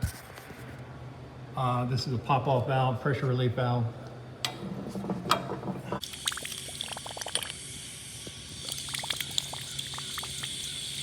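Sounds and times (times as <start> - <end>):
water pouring from a hose: 6.0 - 7.7, 8.3 - 11.0.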